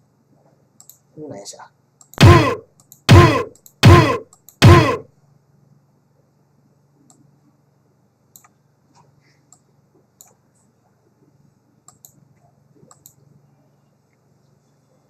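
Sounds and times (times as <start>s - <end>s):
computer mouse clicks: 0.8s - 1.0s, 8.3s - 8.6s, 9.5s - 10.4s, 11.8s - 12.2s, 12.9s - 13.2s.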